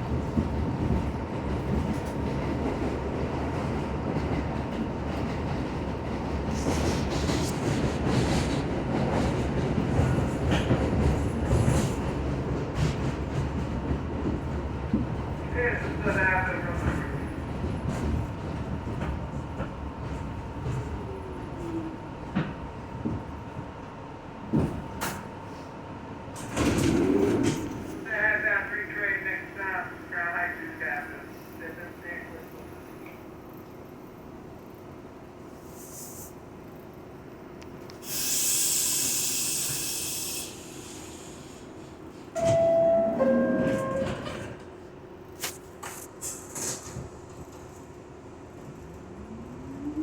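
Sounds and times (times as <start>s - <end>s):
subway car rumbling on track: 0.0s - 50.0s
pneumatic air hiss: 35.6s - 36.4s, 38.0s - 41.7s
two-note descending door chime: 42.4s - 44.3s.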